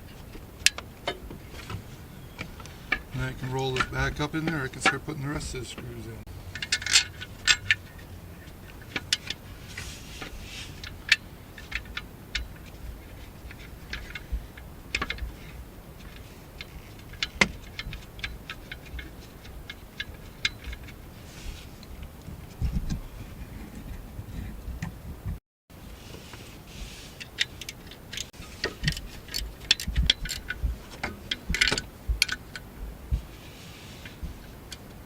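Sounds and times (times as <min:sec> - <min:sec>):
metal parts clinking: 0:02.9 - 0:09.8.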